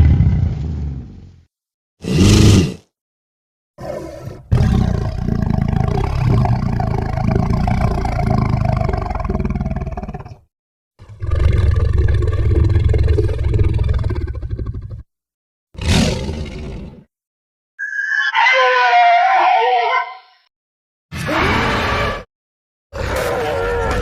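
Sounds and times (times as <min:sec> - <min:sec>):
low rough creature roar: 0:02.0 - 0:02.8, 0:23.0 - 0:24.0.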